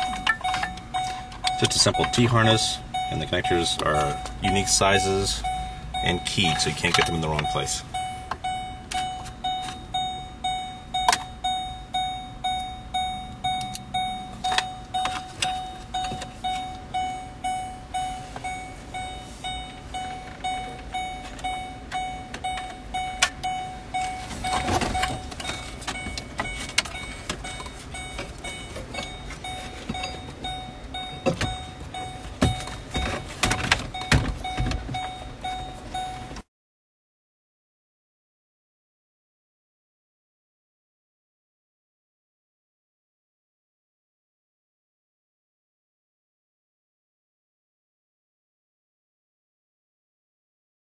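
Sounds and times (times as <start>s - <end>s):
car warning chime: 0.0s - 36.5s.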